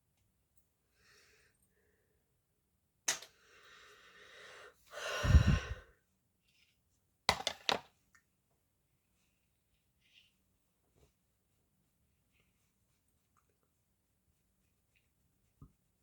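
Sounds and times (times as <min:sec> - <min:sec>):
faint intake of breath: 0:03.4 - 0:05.9
heavy sigh into microphone: 0:04.2 - 0:05.9.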